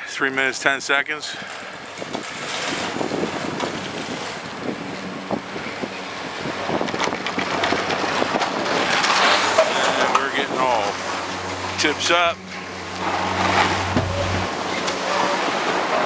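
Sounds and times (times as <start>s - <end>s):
wind on microphone: 1.7s - 16.0s
chairlift clicks and clatter: 6.3s - 15.8s.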